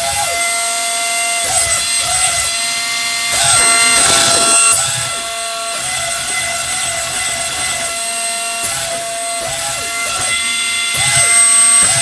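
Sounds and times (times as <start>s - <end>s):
toy electric motor whining: 0.0s - 12.0s
rising-and-falling tones: 3.3s - 5.3s.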